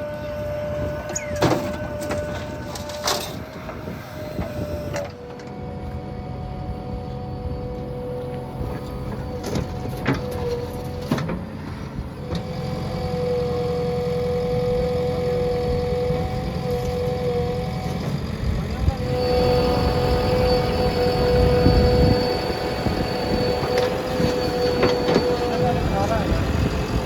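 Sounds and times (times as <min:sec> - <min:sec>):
diesel engine running: 0:00.0 - 0:27.0
high whine: 0:18.6 - 0:27.0.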